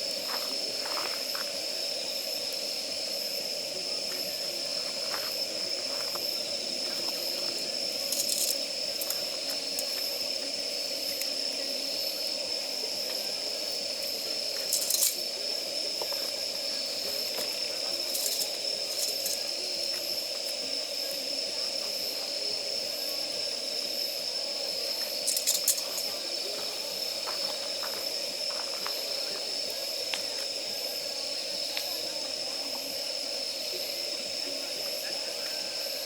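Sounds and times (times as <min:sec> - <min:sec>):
wood fire hissing: 0:00.0 - 0:36.0.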